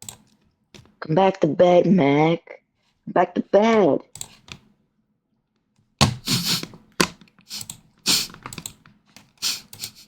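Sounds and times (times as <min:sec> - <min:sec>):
computer keyboard clattering: 0:00.0 - 0:00.9, 0:06.0 - 0:10.0.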